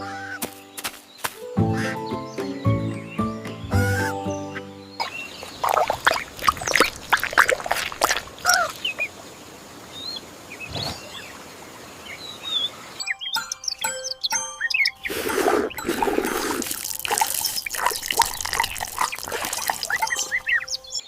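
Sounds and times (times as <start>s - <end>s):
music: 0.0s - 5.2s, 13.0s - 17.2s
birds chirping: 0.0s - 21.0s.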